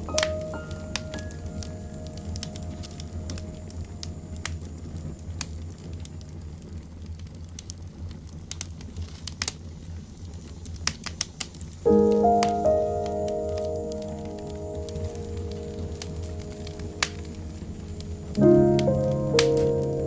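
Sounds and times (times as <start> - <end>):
small clicks and crinkly rustles: 0.0 - 20.0.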